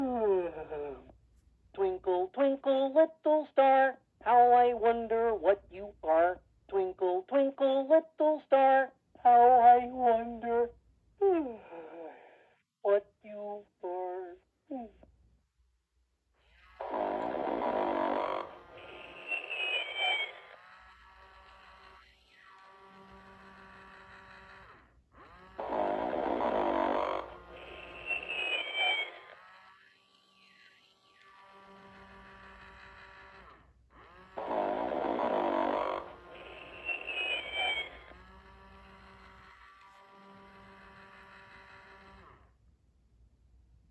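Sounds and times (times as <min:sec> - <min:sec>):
toy snoring: 0:16.4 - 0:42.5
wavering high whistle: 0:18.2 - 0:20.5, 0:27.6 - 0:29.4, 0:36.4 - 0:38.1
faint electronic hum: 0:25.6 - 0:29.8, 0:34.3 - 0:42.3.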